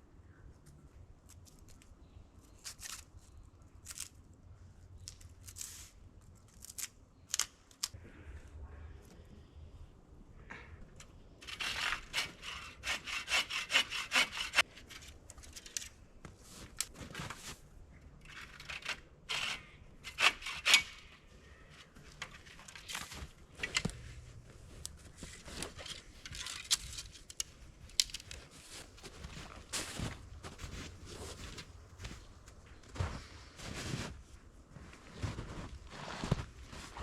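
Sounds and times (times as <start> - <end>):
hand saw cutting wood: 11.4 - 14.7, 18.6 - 21.2.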